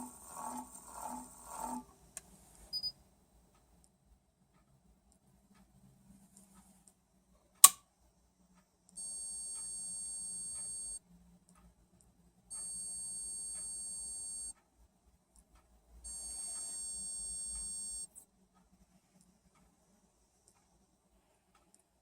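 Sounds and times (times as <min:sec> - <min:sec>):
sharp click: 0:07.6 - 0:07.8.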